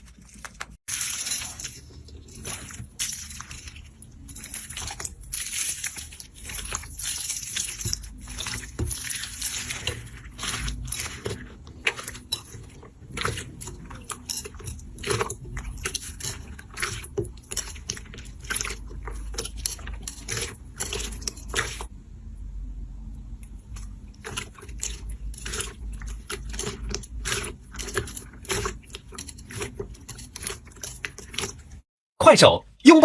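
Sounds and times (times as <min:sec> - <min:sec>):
slime crackling and popping: 0:00.4 - 0:17.8.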